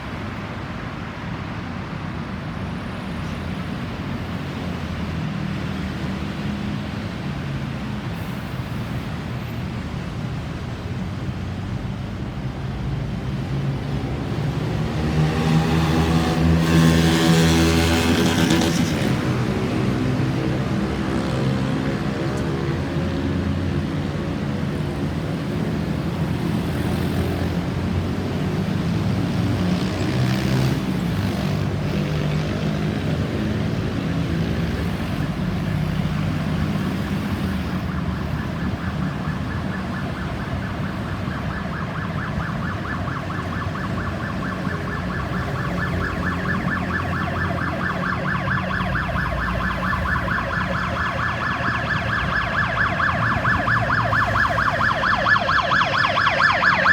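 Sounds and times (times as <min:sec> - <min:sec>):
road traffic rumble: 0:00.0 - 0:56.9
electronic siren warbling: 0:37.1 - 0:56.9.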